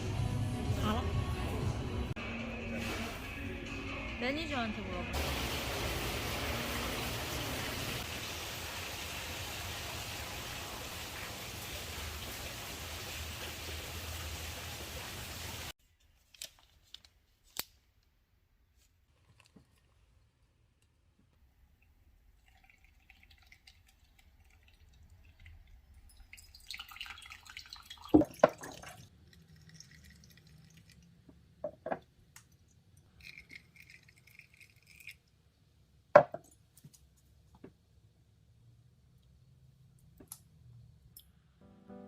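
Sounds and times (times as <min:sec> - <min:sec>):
liquid sound: 0:21.6 - 0:31.8, 0:32.4 - 0:35.6.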